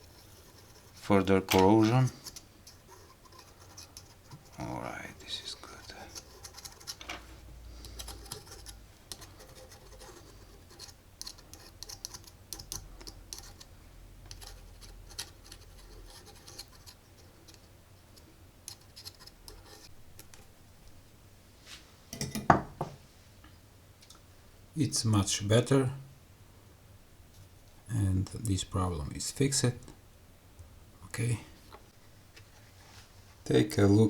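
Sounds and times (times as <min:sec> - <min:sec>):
scratching at a workbench: 0:00.0 - 0:19.9.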